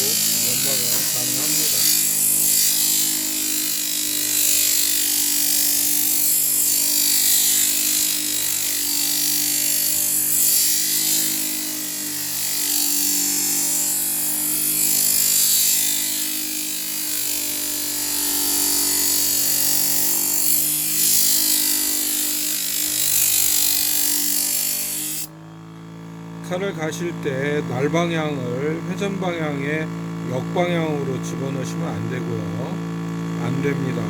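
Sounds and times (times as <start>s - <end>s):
steel blade grinding on abrasive disc: 0.0s - 25.3s
sharpening machine motor hum: 0.0s - 34.0s.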